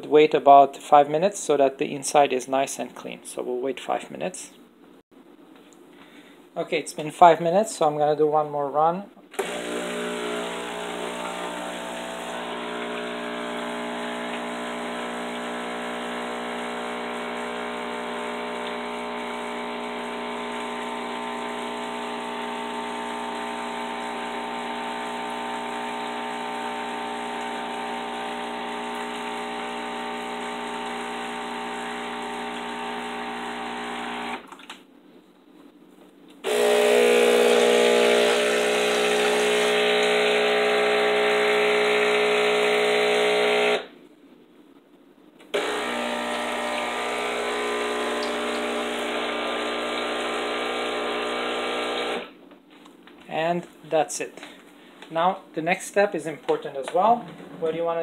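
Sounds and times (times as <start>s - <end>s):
espresso machine pump humming: 9.4s - 34.4s, 36.4s - 43.9s, 45.6s - 52.3s.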